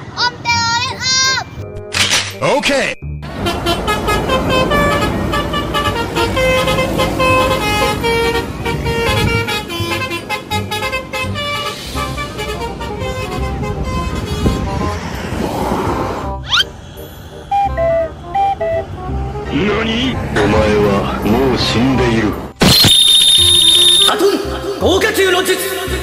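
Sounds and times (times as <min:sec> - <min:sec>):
multi-tone bus horn tooting a tune: 0:03.3 - 0:15.2, 0:17.4 - 0:19.8, 0:22.8 - 0:24.2.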